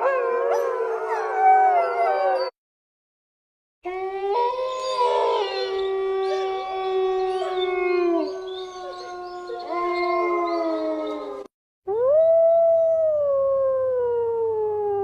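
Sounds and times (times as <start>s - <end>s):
wolves howling in chorus: 3.9s - 11.5s.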